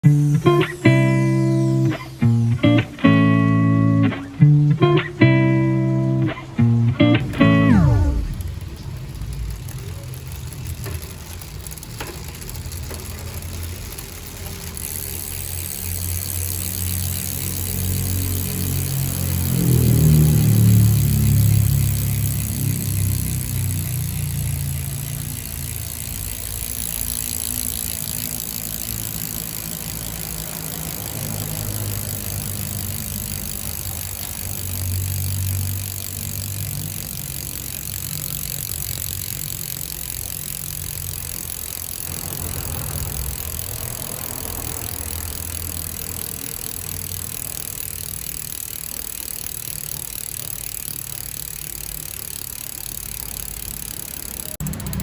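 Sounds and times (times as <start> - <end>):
bicycle freehub ratchet clicking: 0.0 - 55.0
low rumble: 7.2 - 10.8.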